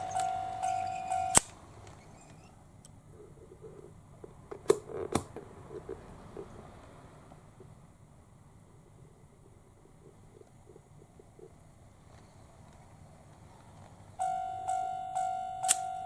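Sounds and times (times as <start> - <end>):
level crossing warning bell: 0.0 - 1.4, 14.2 - 16.0
sharp clicks: 0.0 - 3.0
faint rustling: 8.7 - 14.2.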